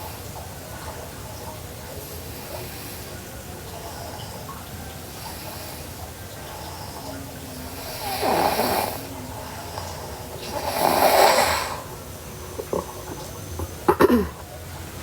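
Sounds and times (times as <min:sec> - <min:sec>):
girl snoring: 0:07.7 - 0:13.2.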